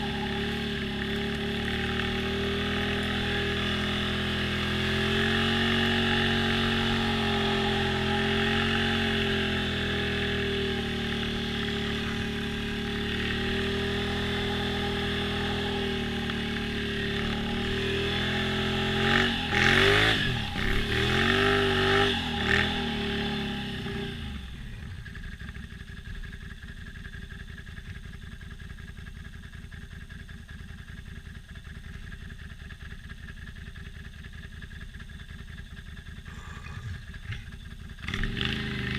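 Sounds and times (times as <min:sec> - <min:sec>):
atv engine revving: 0:00.0 - 0:25.4, 0:36.2 - 0:38.9.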